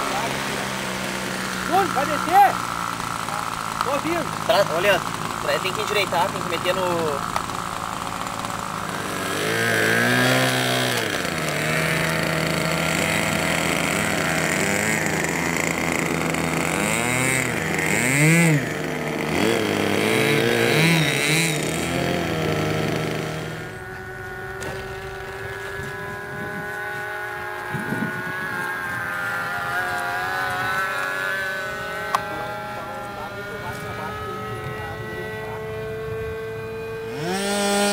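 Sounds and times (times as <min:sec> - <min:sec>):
model airplane engine: 0:00.0 - 0:37.9.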